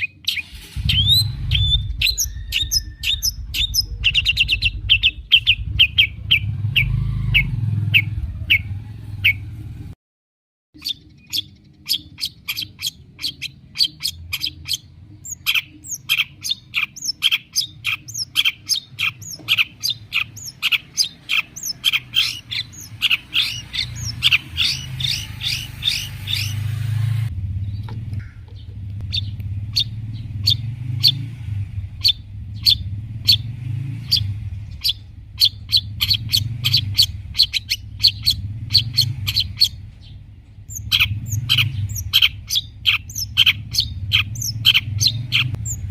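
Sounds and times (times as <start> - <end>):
shrike chattering song: 0.0 - 9.5, 10.8 - 31.3, 31.9 - 45.9
low hum: 0.5 - 10.0, 18.8 - 45.9.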